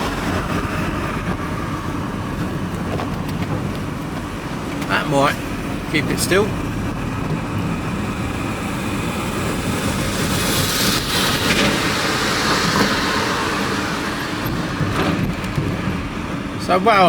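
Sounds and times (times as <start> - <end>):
tyre and wind noise: 0.0 - 17.0
van engine and road rumble: 0.0 - 17.0.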